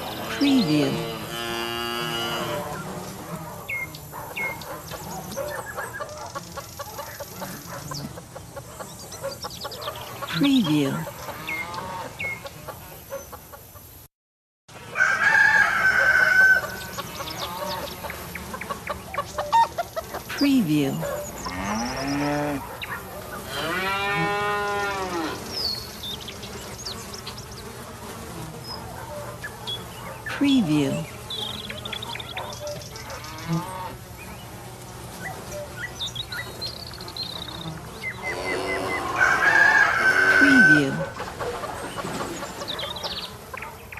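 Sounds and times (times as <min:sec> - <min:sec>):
hens clucking: 0:00.0 - 0:13.8, 0:14.9 - 0:25.4, 0:37.4 - 0:43.9
small birds chirping: 0:00.0 - 0:14.0, 0:16.5 - 0:39.2, 0:40.0 - 0:43.9
cattle mooing: 0:00.1 - 0:03.4, 0:20.9 - 0:22.6, 0:23.4 - 0:25.5, 0:33.0 - 0:34.0, 0:38.2 - 0:41.2
rooster crowing: 0:14.8 - 0:17.9, 0:38.3 - 0:41.2.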